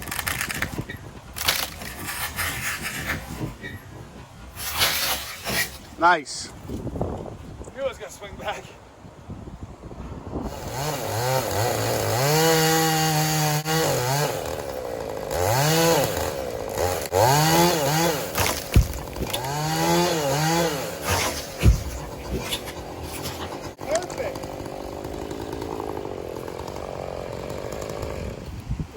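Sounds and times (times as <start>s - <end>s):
chainsaw revving: 10.5s - 28.6s
sharp knocks: 18.4s - 19.5s, 21.1s - 22.7s.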